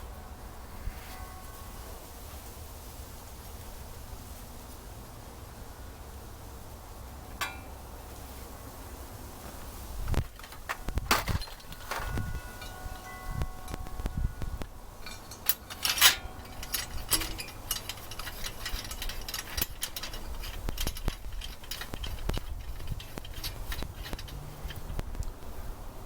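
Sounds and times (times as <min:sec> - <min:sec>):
ringing metal strike: 0:00.0 - 0:02.7, 0:07.4 - 0:07.9, 0:11.2 - 0:19.2
metal tools clinking: 0:07.4 - 0:07.9, 0:10.1 - 0:25.0.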